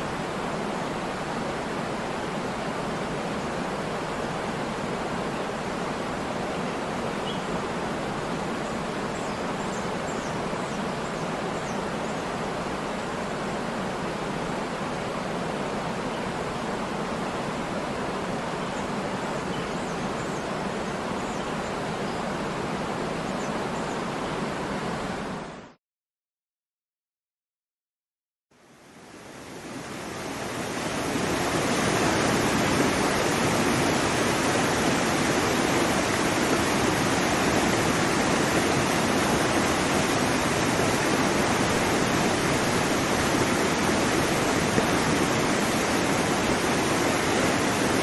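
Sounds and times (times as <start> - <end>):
waterfall rushing: 29.1 - 48.0.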